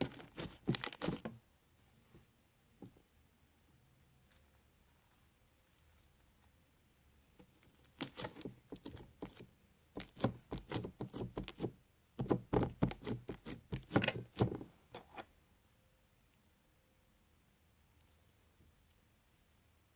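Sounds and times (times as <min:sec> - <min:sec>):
crunchy slime crackling and popping: 0:00.0 - 0:01.3, 0:07.7 - 0:09.4.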